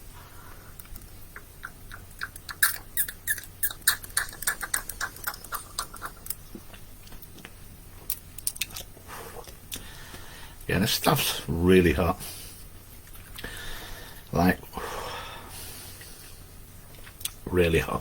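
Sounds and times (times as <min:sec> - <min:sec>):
mouth chewing with moist clicks: 0:00.6 - 0:10.3, 0:12.9 - 0:14.4, 0:16.8 - 0:17.5.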